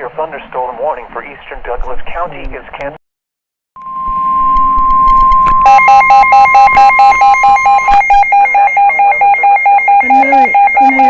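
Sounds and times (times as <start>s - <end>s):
high steady alarm tone: 3.8s - 11.0s
rapid alternating electronic beeps: 3.9s - 11.0s.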